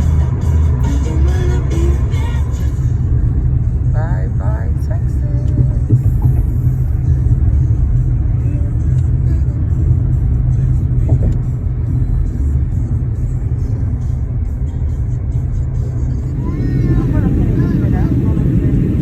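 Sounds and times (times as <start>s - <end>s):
moving vehicle rumble: 0.0s - 19.0s.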